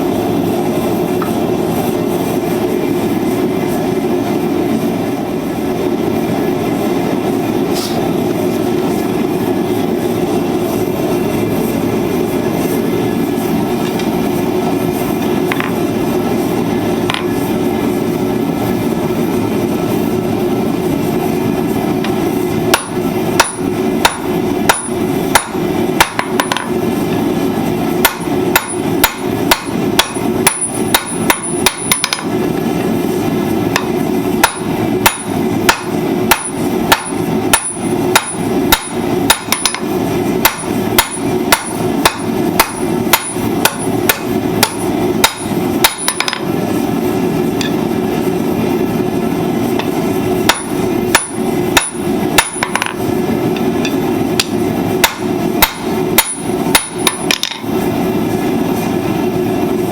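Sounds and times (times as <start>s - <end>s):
hammer striking steel on anvil: 22.0s - 26.8s, 28.0s - 32.4s, 33.7s - 46.5s, 47.6s - 47.8s, 49.8s - 53.0s, 53.6s - 57.7s.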